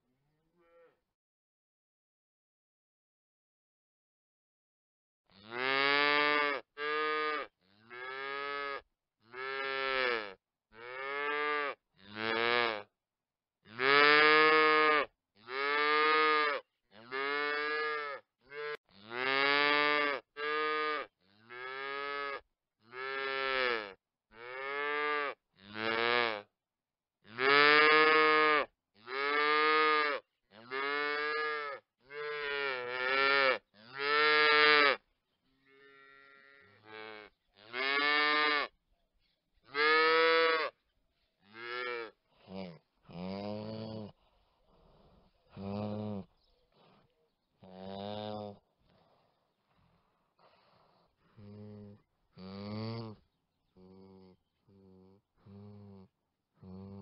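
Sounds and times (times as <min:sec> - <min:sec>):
calves mooing: 0:27.3 - 0:35.0, 0:35.6 - 0:38.7, 0:39.7 - 0:40.8.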